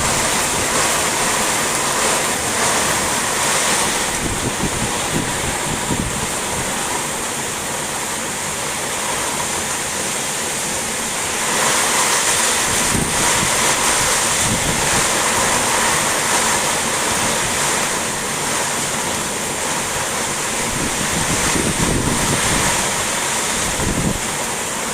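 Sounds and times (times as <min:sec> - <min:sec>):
wind buffeting microphone: 0:00.0 - 0:07.2, 0:12.3 - 0:17.8, 0:19.8 - 0:24.6
heavy rain pouring: 0:00.0 - 0:24.9.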